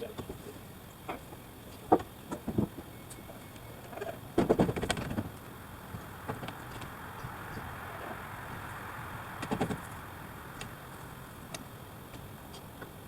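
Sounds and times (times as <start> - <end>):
wooden lumber knocking: 4.4 - 5.3.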